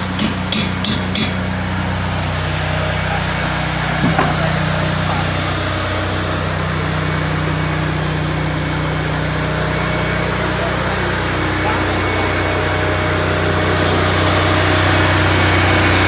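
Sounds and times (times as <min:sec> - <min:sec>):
small engine running: 0:00.0 - 0:16.0
single knock: 0:04.0 - 0:04.6.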